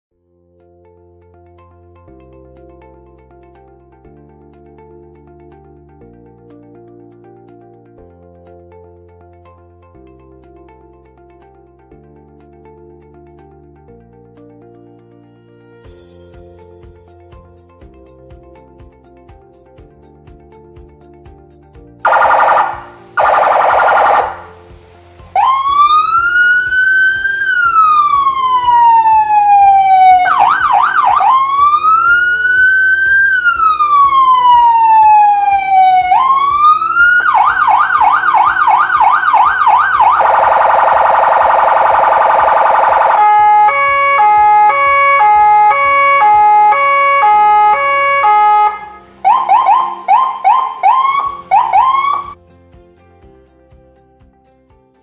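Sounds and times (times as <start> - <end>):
electronic siren wailing and yelping: 22.1 - 24.6, 25.4 - 52.4
harsh horn-like blare: 43.1 - 50.6.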